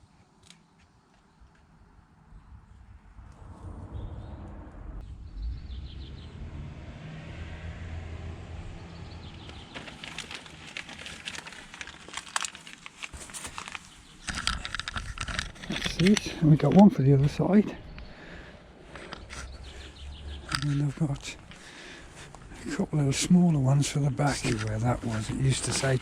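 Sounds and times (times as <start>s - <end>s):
low outdoor rumble: 2.4s - 13.8s, 14.4s - 26.0s
bird chirps: 3.9s - 6.4s, 17.0s - 21.8s
decal crackling and rustling: 9.4s - 26.0s.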